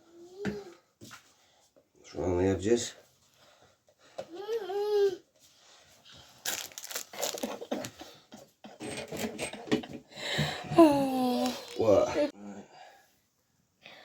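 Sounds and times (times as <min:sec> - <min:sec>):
clicks rattles and scraping of parts: 0:07.2 - 0:10.1
person humming: 0:10.7 - 0:12.3.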